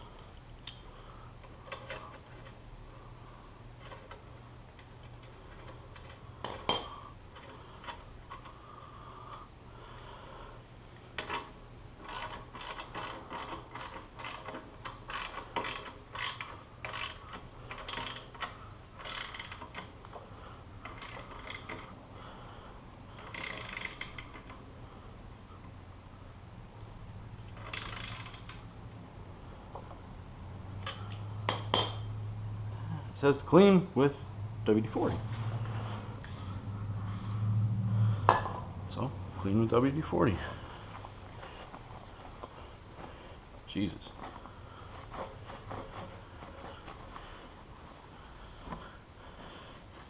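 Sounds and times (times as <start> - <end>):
faint low hum: 0.0 - 50.0
ratchet wrench clicking: 12.0 - 20.2, 20.8 - 21.9, 23.2 - 24.6, 27.5 - 28.7.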